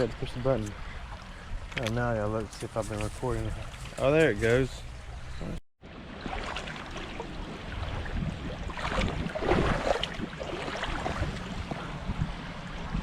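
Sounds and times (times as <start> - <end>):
water splashing around boots: 2.6 - 4.6, 6.0 - 11.8
wind on microphone: 5.2 - 13.0.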